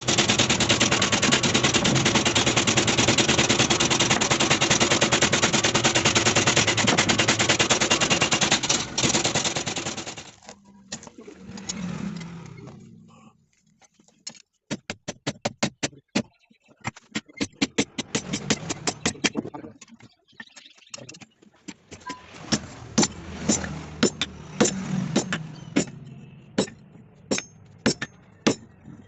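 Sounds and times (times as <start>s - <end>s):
hammer striking metal on anvil: 26.6s - 28.7s.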